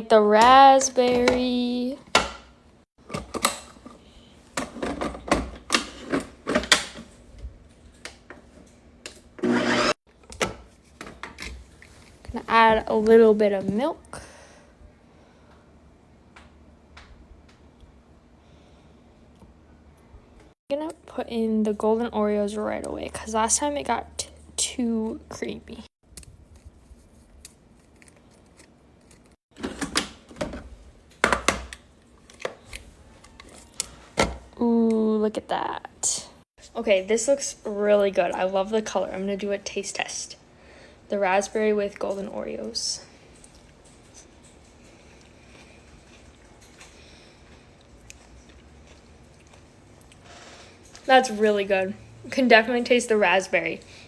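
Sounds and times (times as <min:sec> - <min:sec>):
machine hum: 0:09.4 - 0:10.0.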